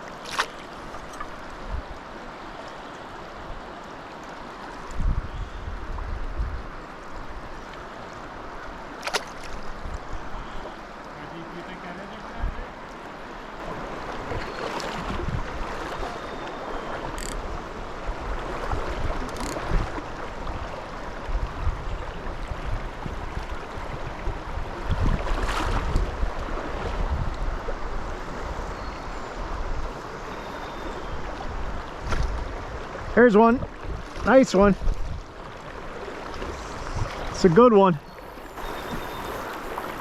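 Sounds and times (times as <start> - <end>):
stream water running: 0.0 - 40.0
wind buffeting microphone: 4.9 - 6.7, 14.2 - 15.8, 17.4 - 28.8, 29.4 - 37.6.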